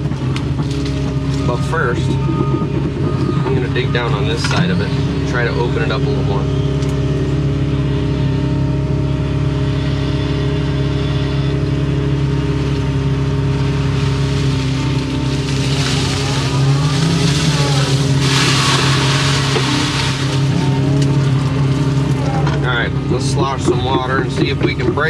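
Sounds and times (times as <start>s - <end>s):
diesel engine under load: 0.0s - 25.0s.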